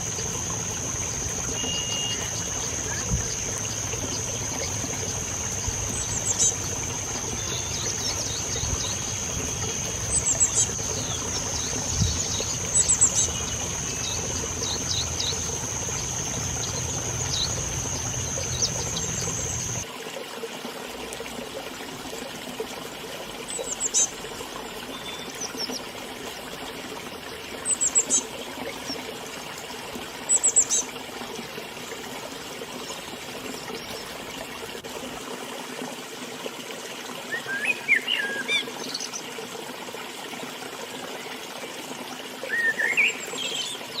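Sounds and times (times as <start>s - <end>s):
river flowing: 0.0s - 44.0s
small birds chirping: 4.0s - 19.8s.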